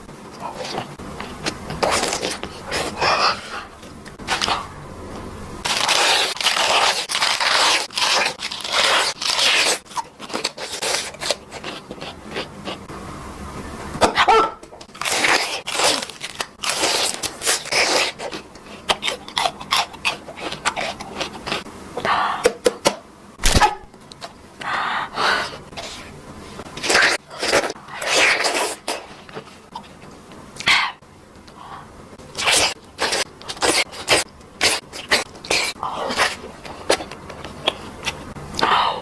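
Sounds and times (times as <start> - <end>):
crunching and chewing crisp food: 0.3 - 4.7, 5.6 - 12.8, 14.8 - 21.7, 32.3 - 38.7.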